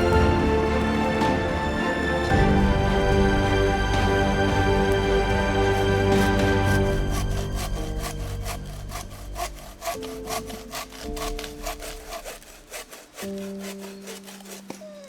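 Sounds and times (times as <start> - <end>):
background music: 0.0 - 15.0
hand saw cutting wood: 4.1 - 15.0.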